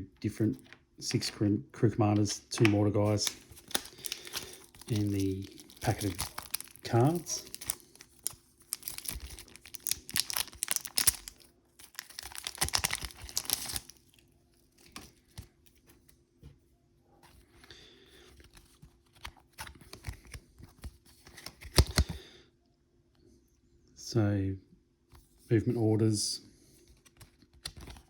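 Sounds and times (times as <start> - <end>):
plastic packet rustling: 2.5 - 15.8.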